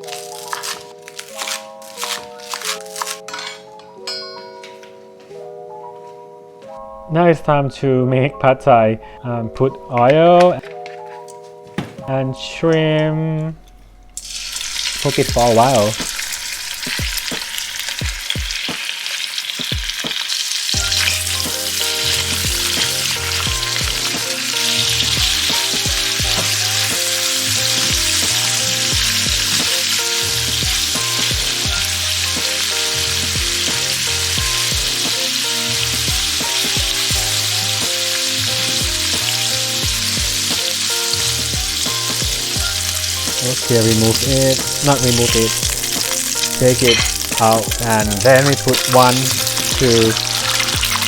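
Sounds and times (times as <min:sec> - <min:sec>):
shrimp sizzling in oil: 0:00.0 - 0:03.4, 0:14.2 - 0:51.0.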